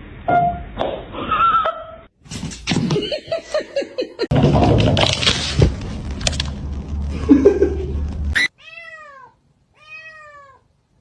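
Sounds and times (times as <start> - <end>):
rough rumbling noise: 4.3 - 8.4
cat meowing: 8.4 - 10.7.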